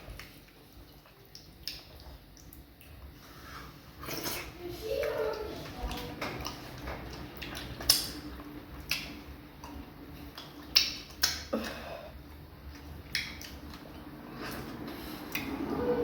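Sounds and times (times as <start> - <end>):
wet mouth smacks chewing: 0.2 - 3.0, 5.9 - 11.5, 12.7 - 15.6.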